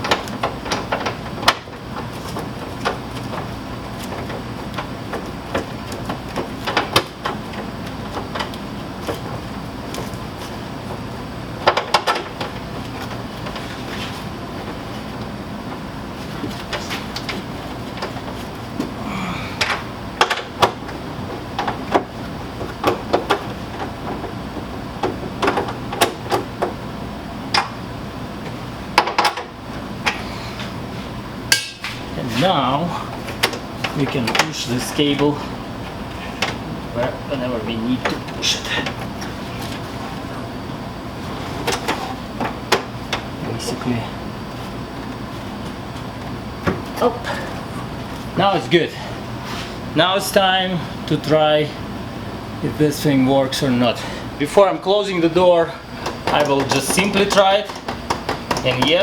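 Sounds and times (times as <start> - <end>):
clicks and knocks handling parts: 0.0 - 10.6, 36.1 - 36.6, 56.0 - 59.0
steady low hum: 0.0 - 59.0.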